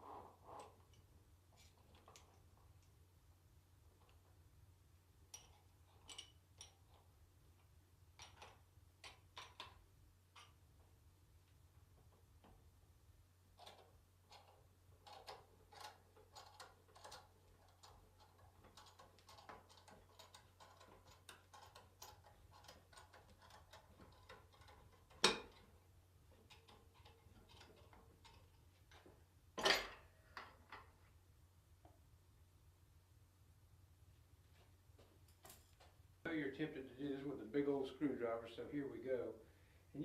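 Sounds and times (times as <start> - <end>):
metal tools clicking on parts: 13.6 - 25.7.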